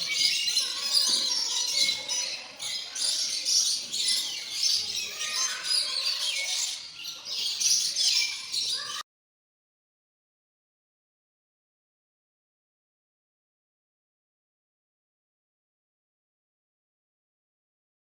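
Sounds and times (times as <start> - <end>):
flock of small birds chirping: 0.0 - 9.0.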